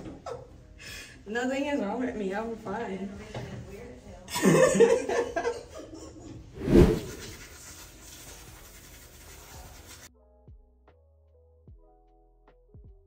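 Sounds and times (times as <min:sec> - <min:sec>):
laughter: 0:04.3 - 0:06.5.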